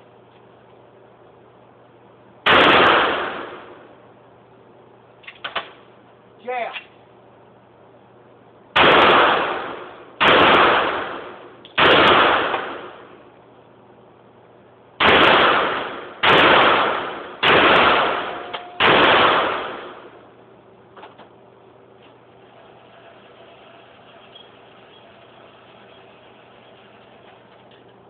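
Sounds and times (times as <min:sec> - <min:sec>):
pistol shots echoing: 0:02.5 - 0:03.9, 0:08.8 - 0:13.2, 0:15.0 - 0:20.3.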